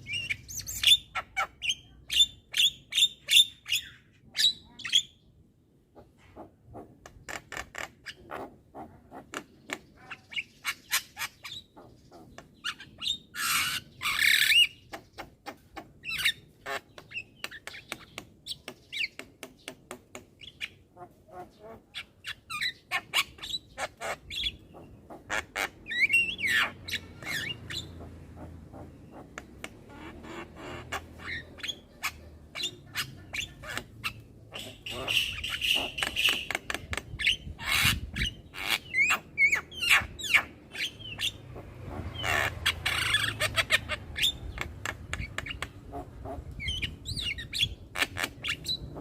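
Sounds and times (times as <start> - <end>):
harsh bird squawk: 21.0 - 49.0.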